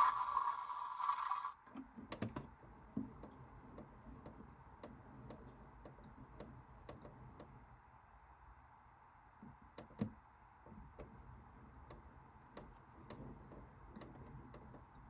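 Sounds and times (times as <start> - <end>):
toy washing machine running: 0.0 - 1.6.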